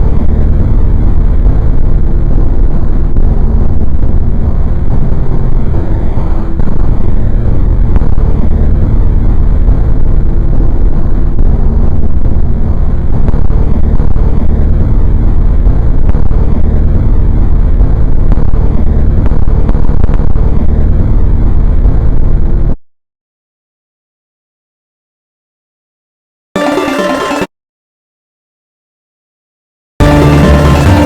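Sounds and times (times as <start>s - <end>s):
loud low rumble: 0.0s - 22.8s, 30.0s - 31.0s.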